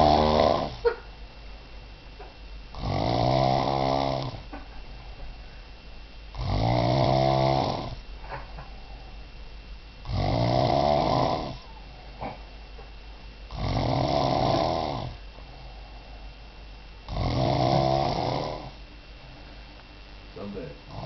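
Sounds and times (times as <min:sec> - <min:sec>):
man snoring heavily: 0:00.0 - 0:00.8, 0:02.7 - 0:04.5, 0:06.4 - 0:08.0, 0:10.0 - 0:11.9, 0:13.5 - 0:15.7, 0:17.1 - 0:18.8.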